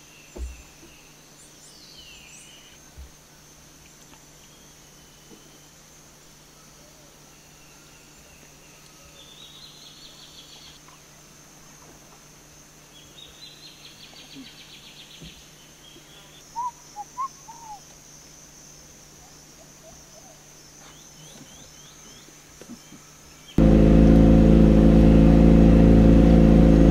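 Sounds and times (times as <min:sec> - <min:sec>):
high insect drone: 0:00.0 - 0:26.8
bird hooting: 0:16.2 - 0:17.9
rapid pulsed trilling calls: 0:16.2 - 0:17.9.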